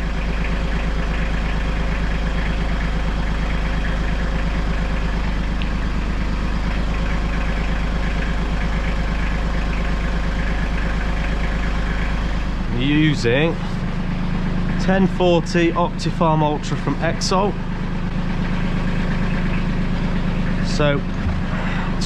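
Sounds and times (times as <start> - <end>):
tractor diesel engine idling: 0.0 - 22.0.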